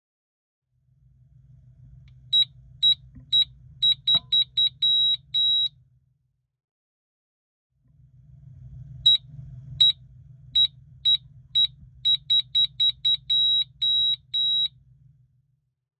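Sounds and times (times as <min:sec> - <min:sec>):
high-pitched altimeter beeps: 0:02.4 - 0:05.7, 0:10.6 - 0:14.8.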